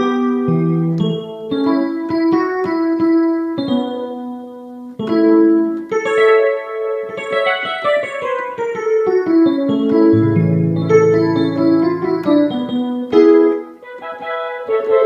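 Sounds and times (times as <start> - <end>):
piano-like keyboard chords: 0.0 - 15.0
low bass note: 10.2 - 12.4.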